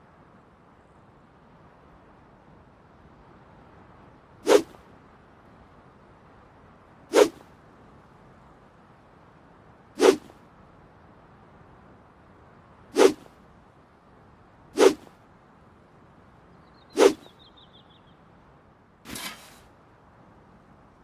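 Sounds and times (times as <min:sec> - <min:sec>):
sword swishing through air: 0:04.4 - 0:04.8, 0:07.1 - 0:07.5, 0:10.0 - 0:10.4, 0:13.0 - 0:13.3, 0:14.8 - 0:15.2, 0:17.0 - 0:17.3, 0:19.1 - 0:19.7.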